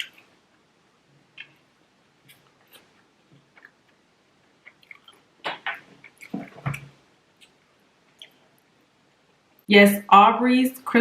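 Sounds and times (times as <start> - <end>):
chewing: 2.2 - 8.6
wet mouth clicks: 4.6 - 6.6, 8.2 - 8.4.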